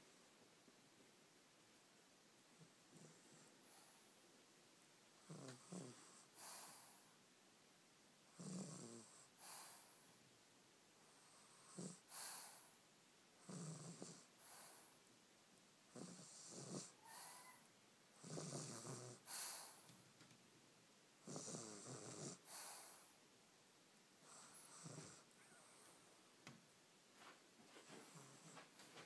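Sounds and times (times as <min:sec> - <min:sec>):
toddler snoring: 0:02.9 - 0:04.0, 0:05.2 - 0:07.1, 0:08.3 - 0:10.0, 0:11.2 - 0:12.7, 0:13.4 - 0:14.9, 0:15.9 - 0:19.9, 0:21.2 - 0:23.1, 0:24.2 - 0:26.0.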